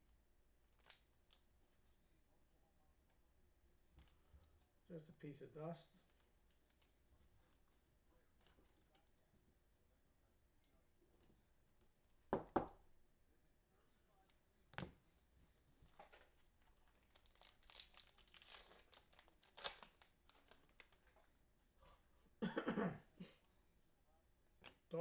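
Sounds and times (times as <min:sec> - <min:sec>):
cellophane wrapper crinkling and tearing: 0:00.6 - 0:01.5, 0:15.9 - 0:21.3.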